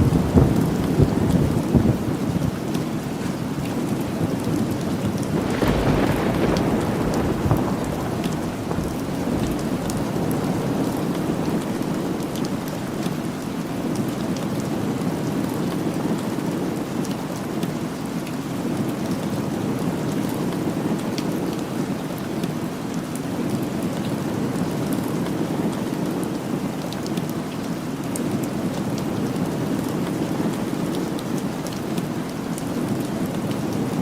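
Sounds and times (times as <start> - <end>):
low rumble of thunder: 0.0 - 3.1, 3.8 - 13.0
steady rain falling: 0.0 - 34.0.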